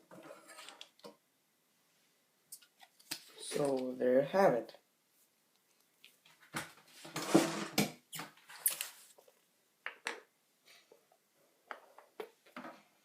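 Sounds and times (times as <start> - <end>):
scraping and rustling of parts: 0.0 - 1.1.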